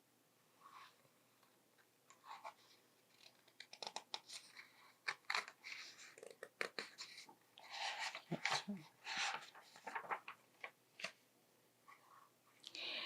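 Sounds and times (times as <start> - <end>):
paper rustling: 2.2 - 11.2.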